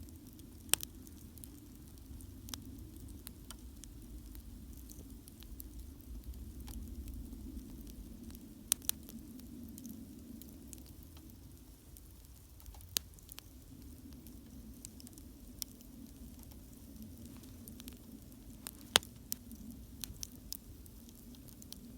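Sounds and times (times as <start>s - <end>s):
campfire crackling: 0.0s - 21.9s
low rush of flame: 0.0s - 21.9s
sharp fire pops: 14.1s - 21.9s.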